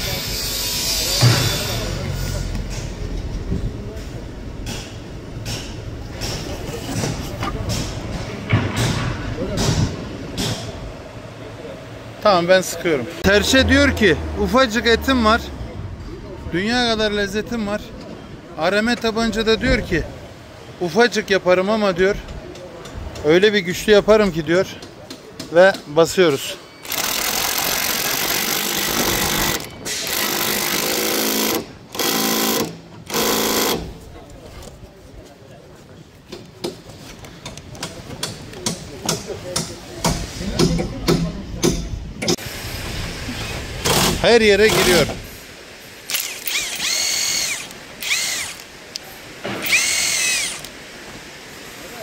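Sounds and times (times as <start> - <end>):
impact wrench whining: 26.8 - 33.9, 46.1 - 48.7, 49.5 - 50.7.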